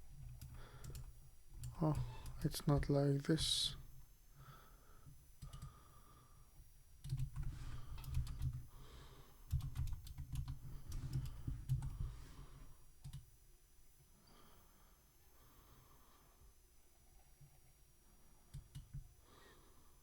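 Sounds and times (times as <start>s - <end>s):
computer keyboard key clicks: 7.0s - 8.6s, 9.5s - 12.0s.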